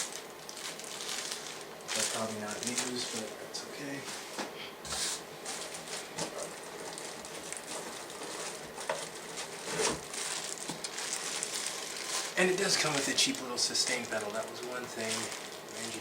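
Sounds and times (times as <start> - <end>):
packaging rustling and crinkling: 0.0 - 16.0.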